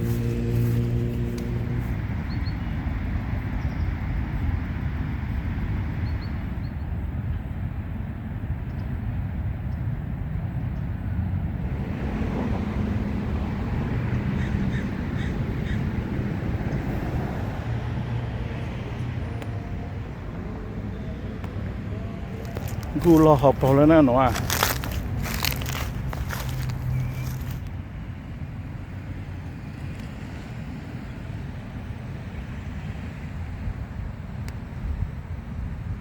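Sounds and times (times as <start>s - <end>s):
steady outdoor rumble: 0.0s - 36.0s
crows cawing: 14.4s - 15.8s.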